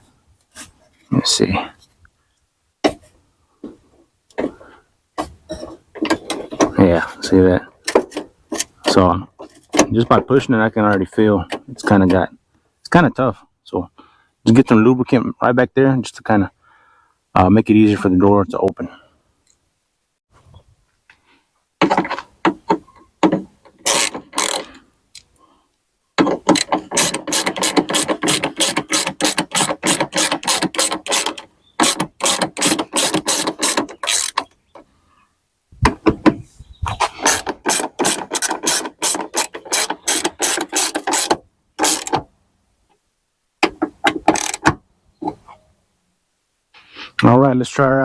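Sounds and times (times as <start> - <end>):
hand ratchet clicking: 23.8 - 25.3, 26.2 - 34.5, 37.2 - 42.2, 43.6 - 44.7.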